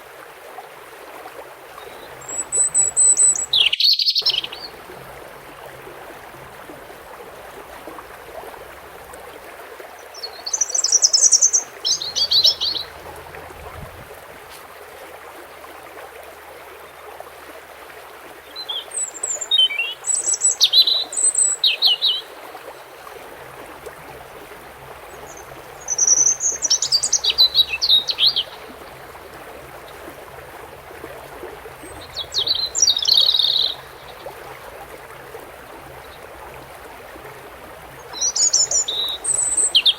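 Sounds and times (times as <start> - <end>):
running water: 0.0 - 39.9
bird twittering: 2.2 - 4.7, 10.2 - 13.2, 25.3 - 28.7, 31.9 - 34.2, 38.1 - 39.9.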